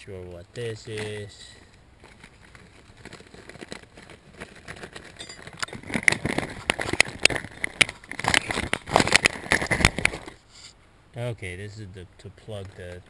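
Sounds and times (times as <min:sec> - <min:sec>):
tool kit pieces rattling: 0:00.9 - 0:10.4.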